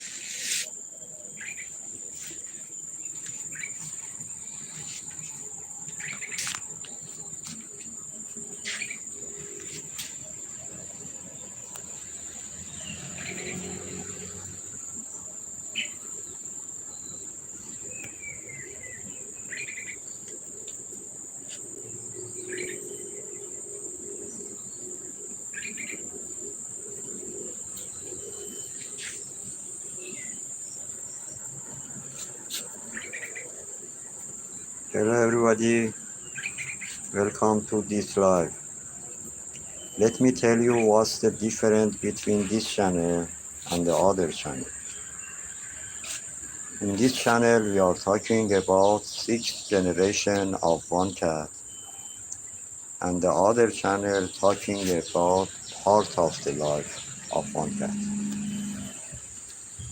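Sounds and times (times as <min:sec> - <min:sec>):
high-pitched insect trill: 0:00.0 - 0:59.9
bird chirps: 0:36.2 - 0:37.2, 0:39.5 - 0:41.5, 0:51.6 - 0:52.6, 0:53.8 - 0:59.9.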